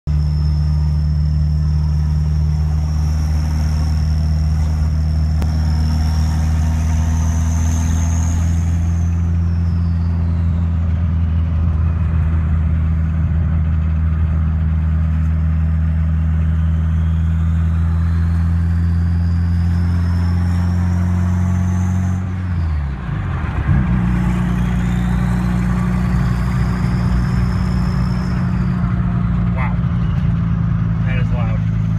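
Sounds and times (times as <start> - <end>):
car exhaust drone: 0.0 - 31.9
high turbo whistle: 0.1 - 11.6, 16.3 - 22.8, 23.7 - 30.4.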